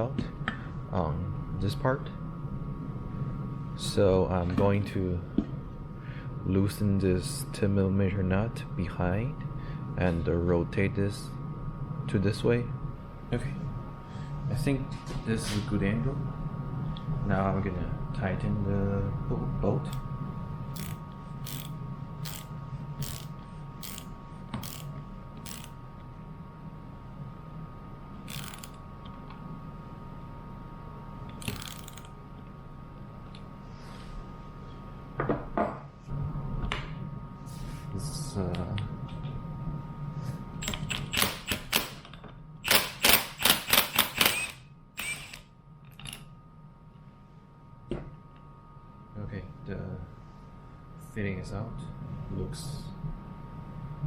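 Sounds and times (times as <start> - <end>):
ratchet wrench clicking: 20.8 - 25.8, 28.3 - 28.8, 31.3 - 32.1, 40.6 - 41.9, 42.7 - 45.4
sharp metal clicks of hand tools: 31.3 - 32.1, 40.6 - 42.0, 42.7 - 45.4.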